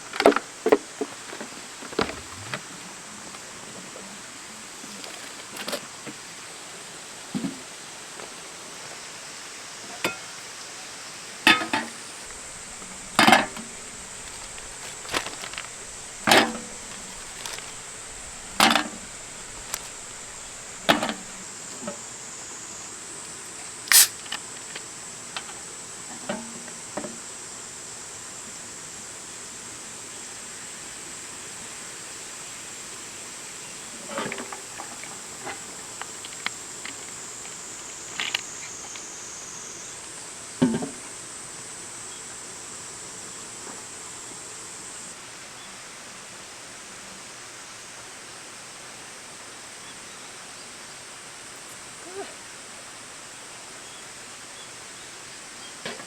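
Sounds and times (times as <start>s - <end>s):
high-pitched hiss: 0.0s - 56.0s.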